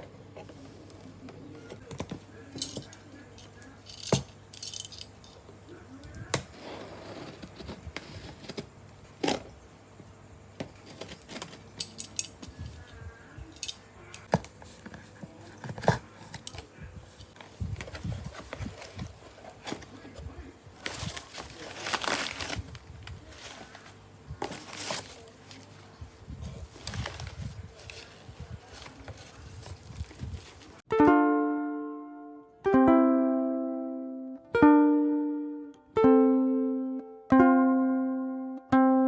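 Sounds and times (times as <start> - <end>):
plastic packaging rustling: 13.6 - 30.9.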